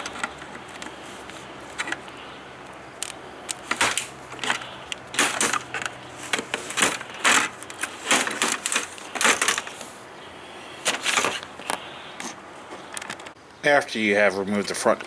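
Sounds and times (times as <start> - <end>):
plastic scraping: 0.0 - 2.3, 3.0 - 10.0, 10.8 - 12.4.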